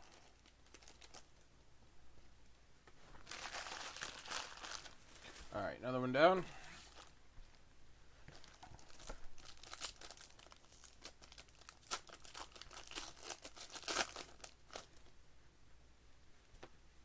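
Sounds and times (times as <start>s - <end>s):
plastic wrapping crinkling and tearing: 0.0s - 1.4s, 3.2s - 5.5s, 8.3s - 15.1s.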